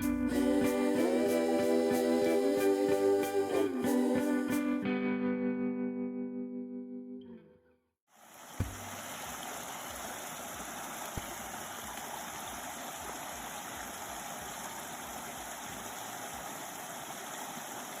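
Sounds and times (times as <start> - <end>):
light knock: 8.6 - 8.8.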